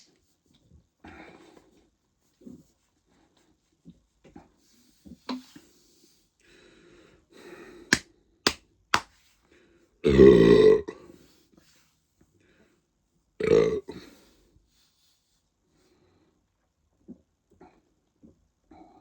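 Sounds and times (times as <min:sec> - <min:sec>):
man burping: 0:10.0 - 0:11.0, 0:13.4 - 0:14.0.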